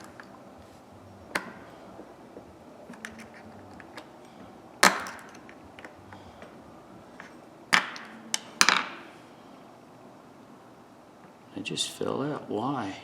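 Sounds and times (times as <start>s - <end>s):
small metal parts clicking: 2.8s - 9.0s.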